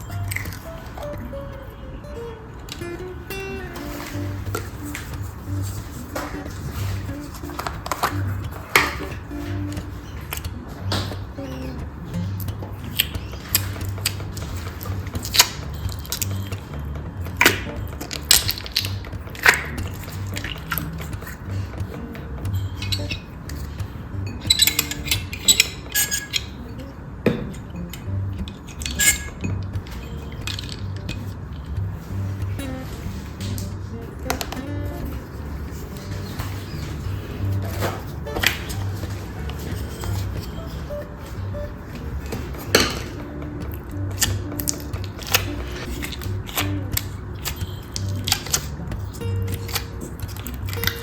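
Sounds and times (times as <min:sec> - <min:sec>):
soft background music: 0:00.0 - 0:51.0
utensil clinking against container: 0:24.4 - 0:31.8.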